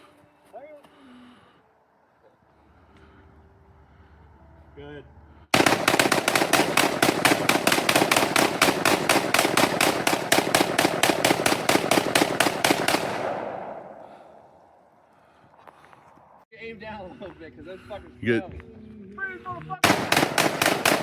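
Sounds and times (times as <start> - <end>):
rapid sharp bangs: 5.5 - 14.5, 19.8 - 21.0.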